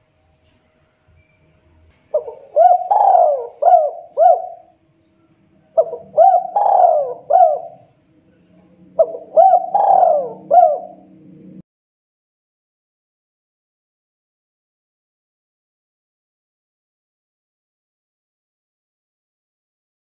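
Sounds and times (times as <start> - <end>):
dove cooing: 2.1 - 4.7, 5.7 - 7.9, 8.6 - 11.6.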